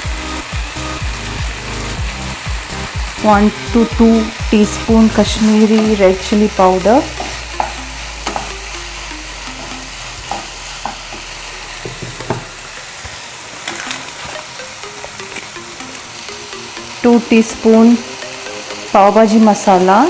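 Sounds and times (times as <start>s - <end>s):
masala sizzling in a pan: 5.3s - 15.5s.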